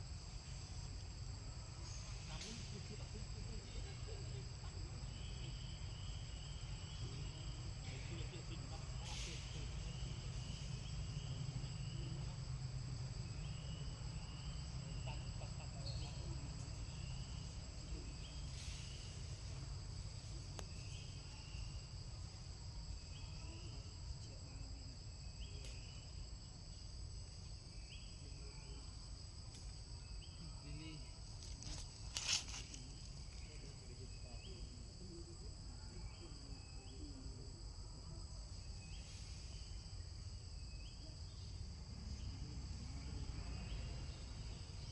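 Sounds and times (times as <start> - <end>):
insects droning: 0.0 - 44.9.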